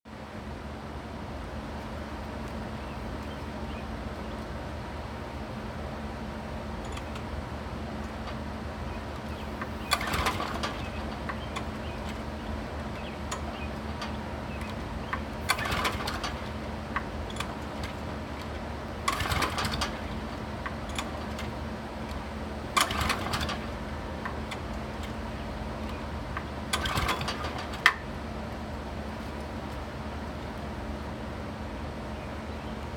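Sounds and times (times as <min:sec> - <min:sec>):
small engine cranking on pull cord: 0:09.6 - 0:12.2, 0:15.4 - 0:16.6, 0:19.0 - 0:20.2, 0:22.7 - 0:23.8, 0:26.7 - 0:28.0.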